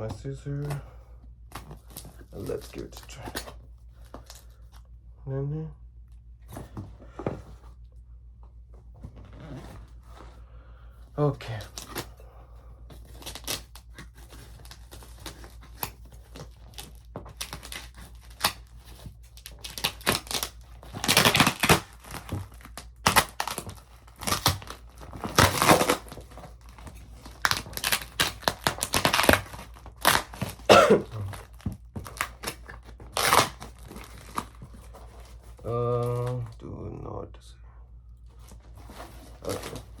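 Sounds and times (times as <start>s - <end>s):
faint low hum: 0.0s - 40.0s
packing wrap crinkling and tearing: 1.5s - 3.4s, 11.2s - 12.1s, 13.0s - 36.6s, 38.4s - 40.0s.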